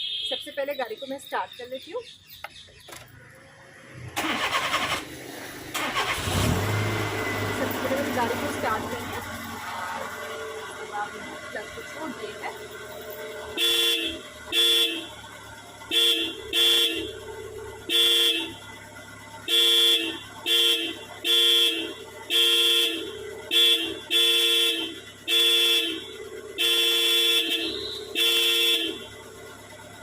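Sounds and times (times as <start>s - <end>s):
car horn tooting: 0.0s - 0.8s, 4.2s - 4.9s, 13.3s - 18.7s, 19.4s - 29.4s.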